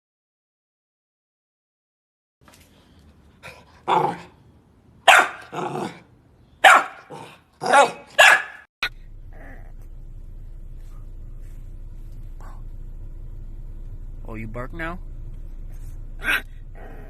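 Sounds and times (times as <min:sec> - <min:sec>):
puppy barking: 0:03.5 - 0:04.4, 0:05.0 - 0:09.7, 0:16.2 - 0:17.0.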